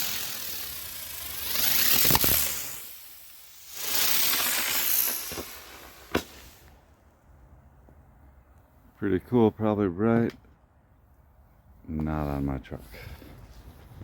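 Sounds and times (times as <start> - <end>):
firework crack: 0.0 - 7.1
firework spinning and hissing: 0.0 - 7.2.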